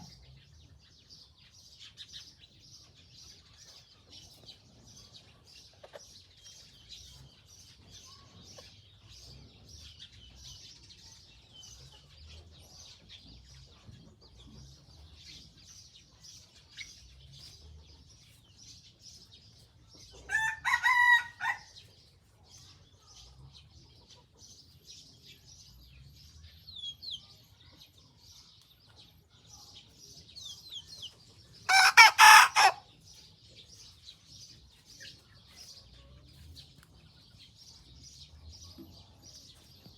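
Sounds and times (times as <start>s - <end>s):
rooster crowing: 20.3s - 21.7s, 31.7s - 32.8s.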